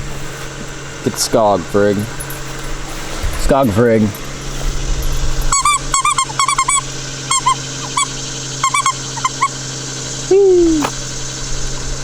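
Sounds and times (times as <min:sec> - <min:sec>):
steady low hum: 0:00.0 - 0:12.0
dog whining: 0:05.0 - 0:09.6, 0:10.3 - 0:11.0.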